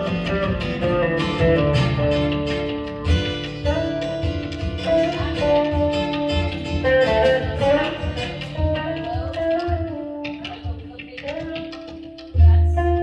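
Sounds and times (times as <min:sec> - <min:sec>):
guitar melody: 0:00.0 - 0:13.0
dance band playing: 0:02.5 - 0:10.9.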